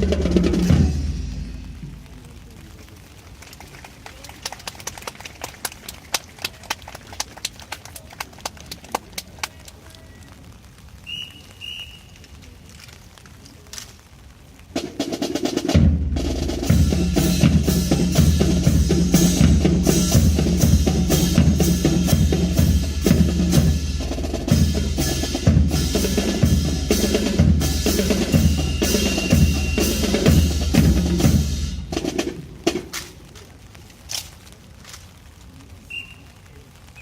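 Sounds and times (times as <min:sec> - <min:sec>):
snare drums: 0:00.0 - 0:02.1, 0:14.7 - 0:33.3
bass drums: 0:00.0 - 0:02.5, 0:14.8 - 0:33.0.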